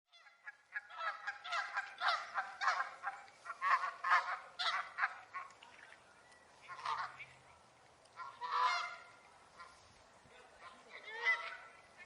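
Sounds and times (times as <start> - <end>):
geese honking: 0.1 - 5.6, 6.6 - 7.4, 8.2 - 9.8, 10.6 - 11.9.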